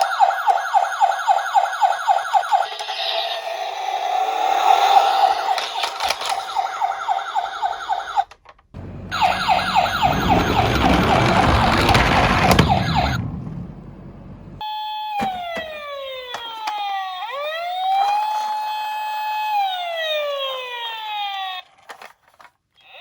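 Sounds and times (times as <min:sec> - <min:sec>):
toy siren yelping: 0:00.0 - 0:08.3, 0:09.1 - 0:13.2, 0:14.6 - 0:22.1
low rumble: 0:08.8 - 0:14.6.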